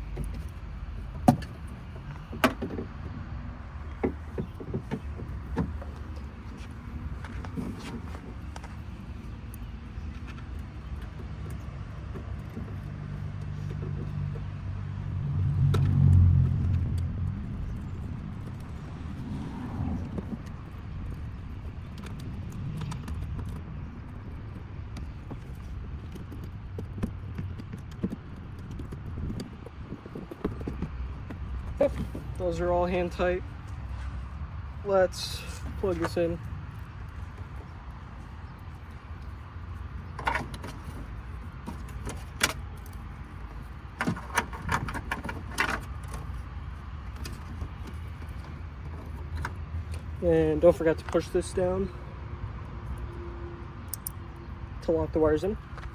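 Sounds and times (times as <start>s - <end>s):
steady low rumble: 0.0s - 40.2s.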